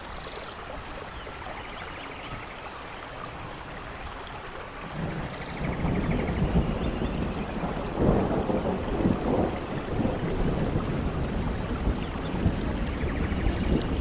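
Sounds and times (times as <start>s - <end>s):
heavy rain: 0.0s - 14.0s
low rolling thunder: 4.8s - 14.0s.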